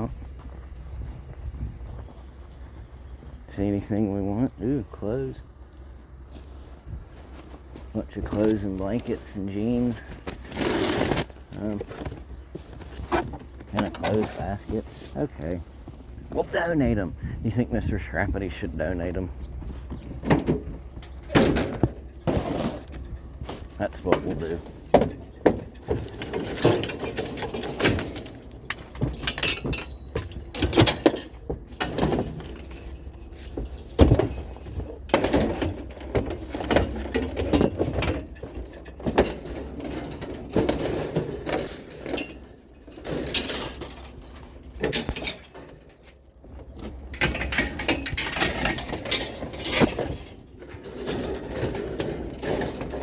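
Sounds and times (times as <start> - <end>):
junk knocking and clanking: 0.0 - 53.0.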